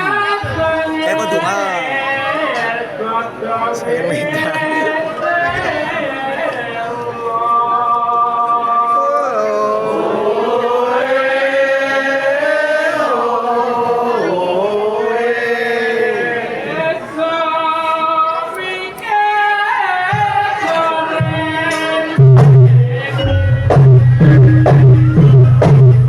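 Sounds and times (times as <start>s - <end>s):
person chanting: 0.0s - 6.3s
deep drum strokes: 22.2s - 26.0s.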